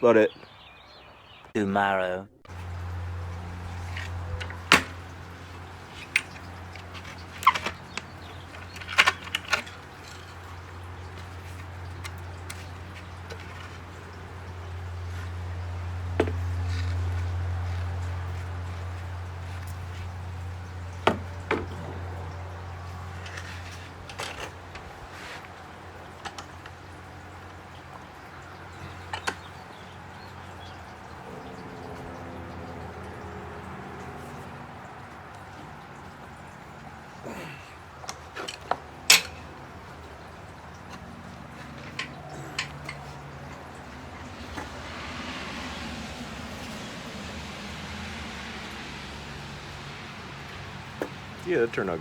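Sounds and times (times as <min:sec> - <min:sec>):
sharp clicks and knocks: 0:03.6 - 0:14.2, 0:38.0 - 0:43.7.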